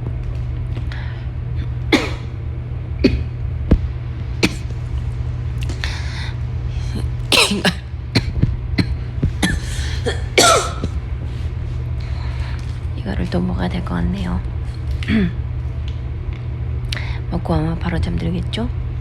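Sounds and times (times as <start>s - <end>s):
steady low hum: 0.0s - 19.0s
person coughing: 2.0s - 2.3s, 3.0s - 3.3s, 4.4s - 4.7s, 7.3s - 11.0s.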